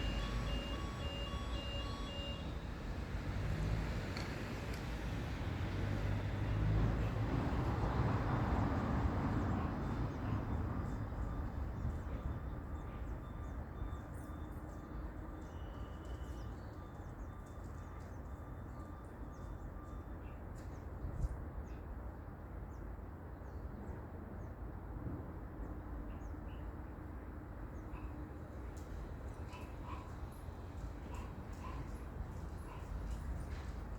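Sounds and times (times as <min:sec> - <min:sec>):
vehicle rumbling past: 0:02.5 - 0:11.8.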